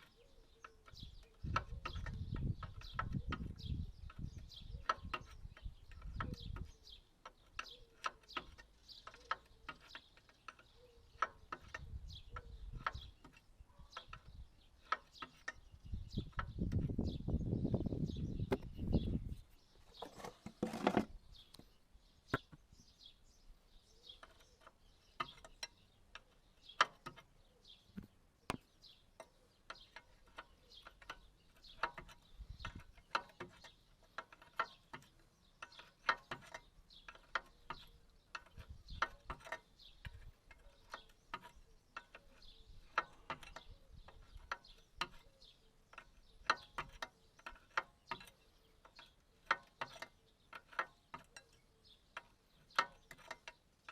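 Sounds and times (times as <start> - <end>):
ratchet spanner clicking: 29.6 - 45.3, 45.9 - 51.5.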